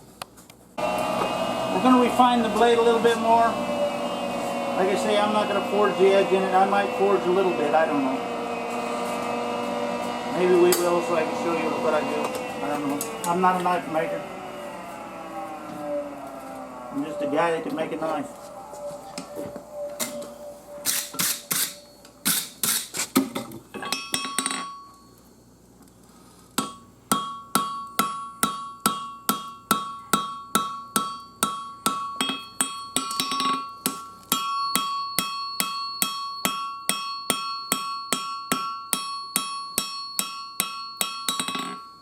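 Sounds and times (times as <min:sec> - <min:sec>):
metallic ring: 0:23.8 - 0:25.2, 0:26.7 - 0:42.0
hammer striking steel on anvil: 0:26.6 - 0:41.9.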